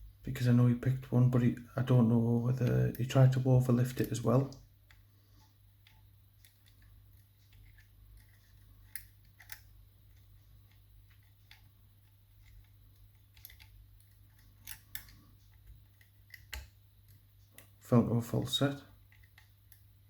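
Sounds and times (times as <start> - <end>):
steady low hum: 0.0 - 20.0
lock picking tools clicking: 13.3 - 15.2.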